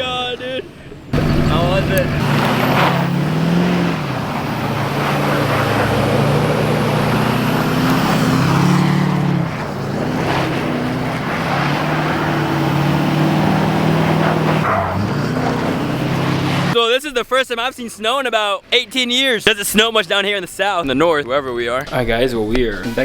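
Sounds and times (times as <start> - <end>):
vehicle engine running: 1.2 - 16.8.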